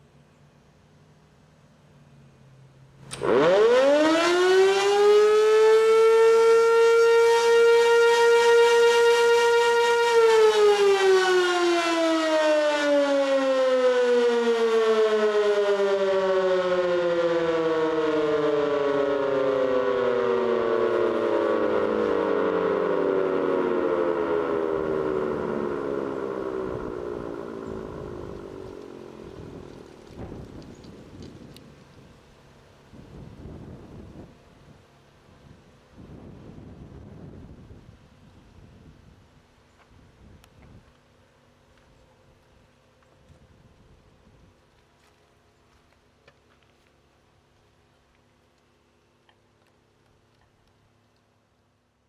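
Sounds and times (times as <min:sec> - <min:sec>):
tornado siren: 0:03.0 - 0:39.2.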